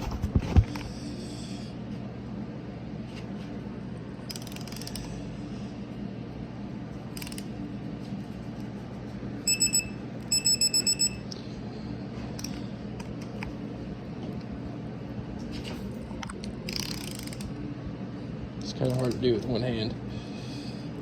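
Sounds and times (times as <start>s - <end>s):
steady low hum: 0.0s - 21.0s
torque wrench beeping: 9.5s - 11.2s.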